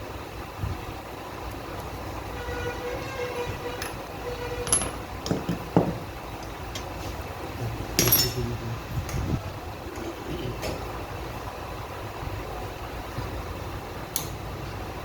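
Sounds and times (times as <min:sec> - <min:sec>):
metal tools clinking: 0:03.7 - 0:05.9, 0:08.0 - 0:08.5.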